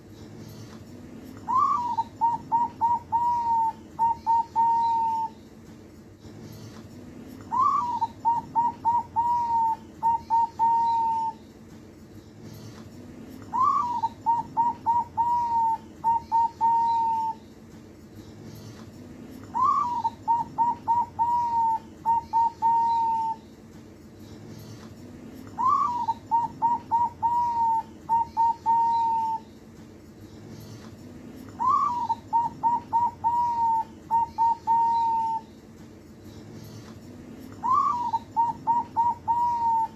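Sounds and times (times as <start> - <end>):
dove cooing: 1.3 - 5.4, 7.5 - 11.4, 13.4 - 17.4, 19.5 - 23.4, 25.5 - 29.5, 31.5 - 35.5, 37.5 - 39.9.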